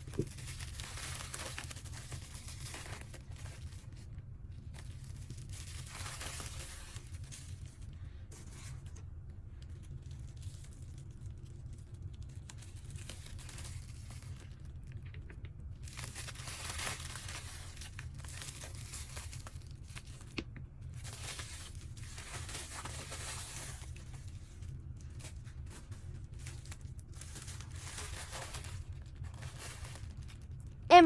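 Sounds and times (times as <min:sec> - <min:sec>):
packaging crinkling and tearing: 0:00.0 - 0:08.7, 0:09.6 - 0:30.8.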